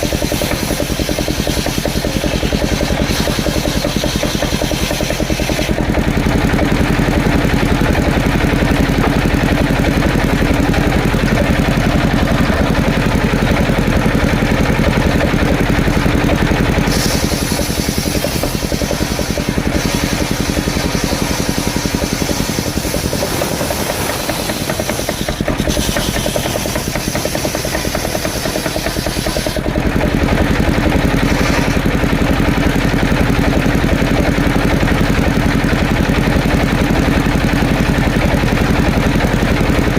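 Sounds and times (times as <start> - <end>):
engine running: 0.0 - 39.9
high hiss: 22.3 - 26.7.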